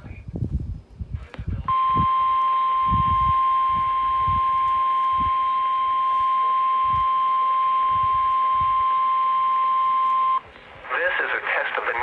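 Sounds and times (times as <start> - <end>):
radio static hiss: 1.1 - 12.0
steady warning alarm tone: 1.7 - 10.5.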